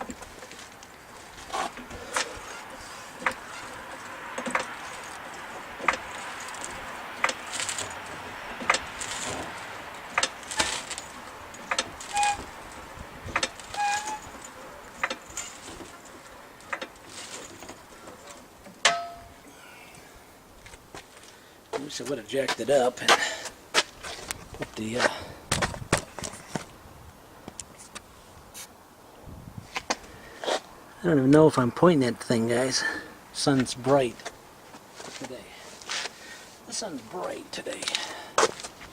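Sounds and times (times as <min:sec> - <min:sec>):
short squeaks: 0:01.2 - 0:18.4
metal tools clicking and clanking: 0:01.5 - 0:19.4.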